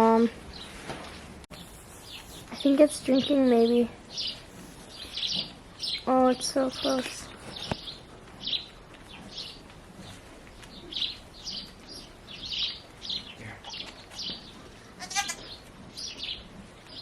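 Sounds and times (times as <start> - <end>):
small birds chirping: 0.0 - 0.9, 1.5 - 17.0
lamb bleating: 15.0 - 15.5.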